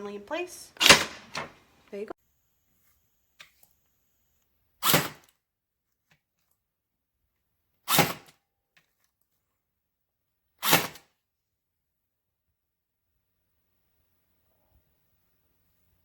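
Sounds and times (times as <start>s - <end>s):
stapler firing nails: 0.8s - 1.5s, 4.8s - 5.3s, 7.9s - 8.4s, 10.6s - 11.0s.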